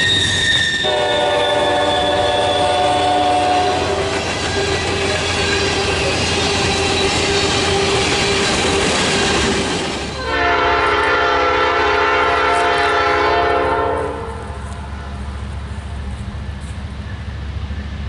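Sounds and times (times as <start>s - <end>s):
locomotive air horn: 0.0s - 6.1s, 10.2s - 14.8s
train wheel and rail noise: 0.0s - 18.0s.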